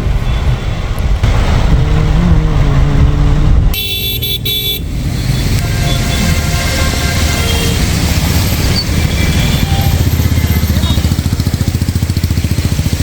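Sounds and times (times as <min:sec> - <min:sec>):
road traffic engines: 0:00.0 - 0:13.0
car horn honking: 0:03.7 - 0:11.3.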